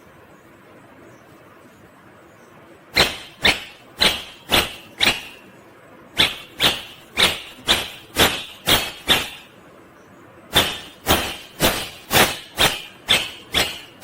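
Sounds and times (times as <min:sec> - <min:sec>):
parakeet screeching calls: 0:03.0 - 0:05.5, 0:06.2 - 0:09.5, 0:10.5 - 0:14.0.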